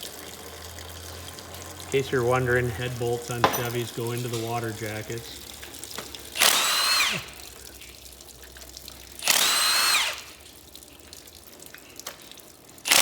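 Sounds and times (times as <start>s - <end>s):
power wrench whine: 6.3s - 7.4s, 9.2s - 10.3s.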